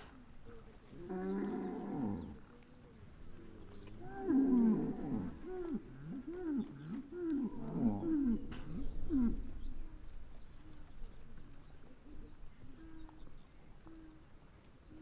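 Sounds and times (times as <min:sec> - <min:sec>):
cattle lowing: 0:03.4 - 0:09.5.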